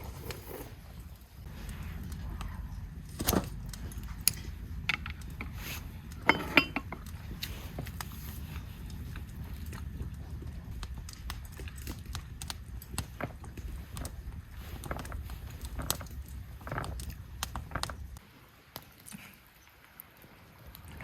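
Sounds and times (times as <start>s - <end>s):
steady low rumble: 0.0s - 18.2s
clinks and knocks of metal: 6.2s - 7.1s.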